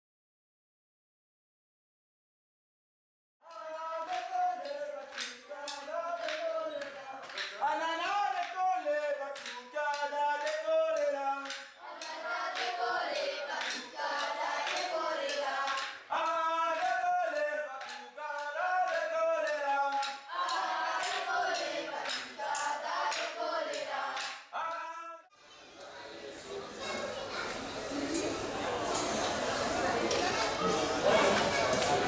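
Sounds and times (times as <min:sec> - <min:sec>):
group of voices singing: 0:03.4 - 0:25.3.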